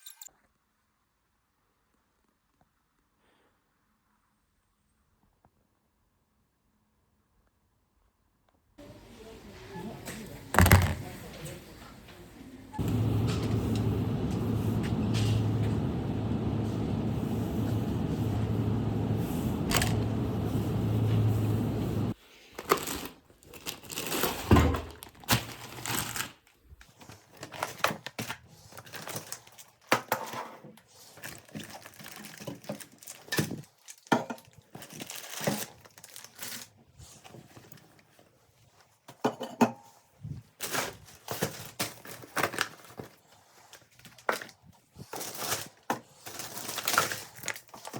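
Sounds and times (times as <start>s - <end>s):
appliance humming and whooshing: 8.8s - 22.2s
clicks crinkling and rustling: 31.2s - 36.8s, 40.6s - 47.9s.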